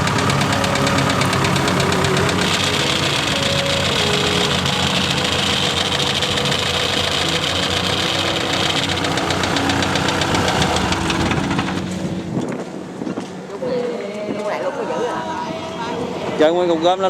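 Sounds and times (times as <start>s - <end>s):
fast mechanical clatter: 0.0s - 12.4s
diesel engine drone: 0.0s - 13.0s.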